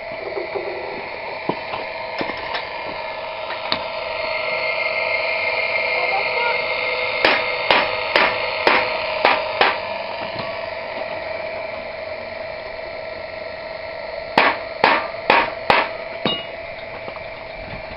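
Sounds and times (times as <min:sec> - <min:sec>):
steady machine hum: 0:00.0 - 0:17.9
sharp loud knocks on metal: 0:14.4 - 0:16.5.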